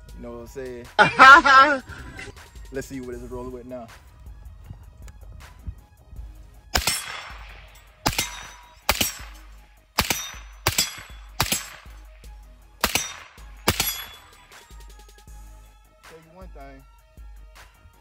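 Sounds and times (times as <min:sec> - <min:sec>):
suppressed gunshots with echo: 0:06.6 - 0:14.9.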